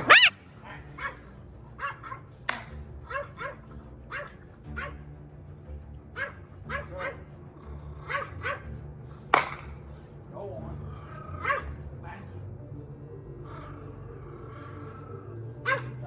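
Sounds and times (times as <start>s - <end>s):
dog barking: 0.0s - 2.4s, 3.0s - 5.1s, 6.1s - 7.3s, 8.0s - 8.8s, 11.2s - 11.9s, 15.6s - 16.0s.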